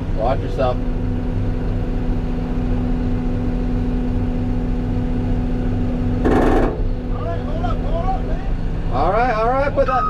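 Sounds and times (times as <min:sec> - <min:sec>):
excavator diesel engine running: 0:00.0 - 0:10.0.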